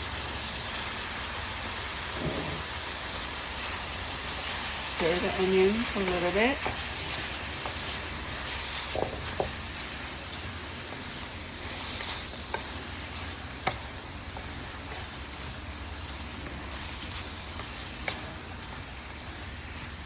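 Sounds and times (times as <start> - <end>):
meat and onion sizzling in a pan: 0.0 - 20.0.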